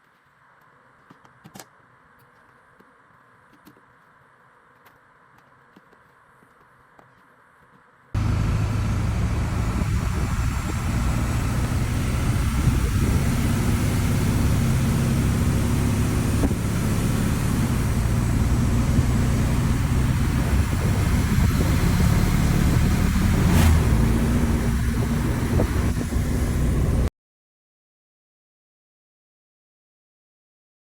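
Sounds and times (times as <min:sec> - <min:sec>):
diesel engine running: 0:08.2 - 0:27.1.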